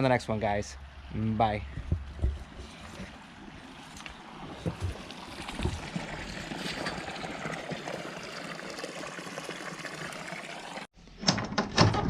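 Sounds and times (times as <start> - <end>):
soft thumps: 1.7 - 3.2
water running and trickling: 3.1 - 10.9.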